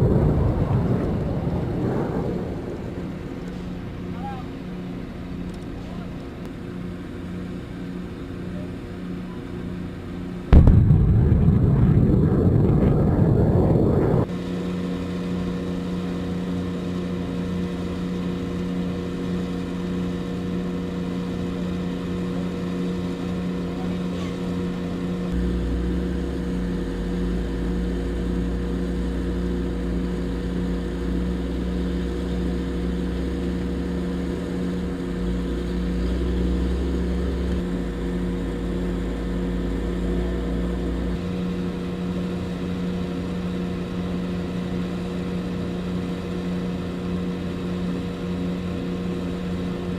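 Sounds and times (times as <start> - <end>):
deep rumble: 0.0 - 5.6, 10.5 - 14.4
heavy vehicle engine running: 0.0 - 49.9
loud rushing noise: 10.6 - 14.3.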